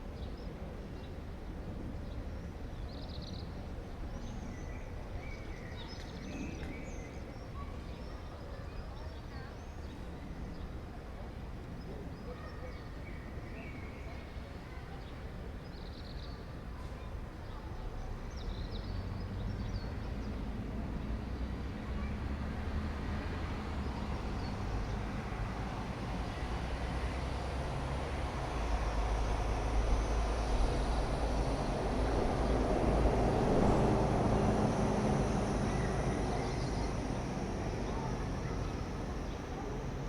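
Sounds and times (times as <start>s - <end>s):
distant traffic hum: 0.0s - 40.0s
passing vehicle rumble: 18.1s - 40.0s.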